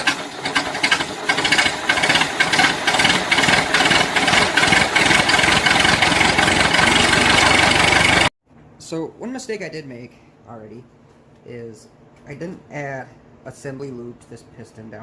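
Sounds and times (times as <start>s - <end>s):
engine running: 0.0s - 8.3s.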